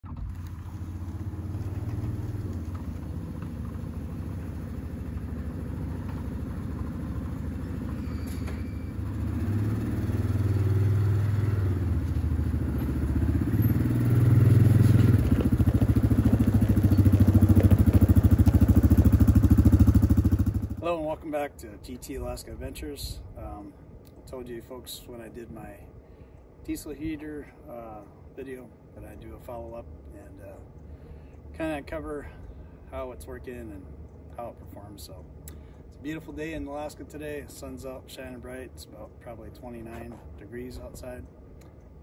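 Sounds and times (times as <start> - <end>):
vehicle engine running: 0.0 - 21.0.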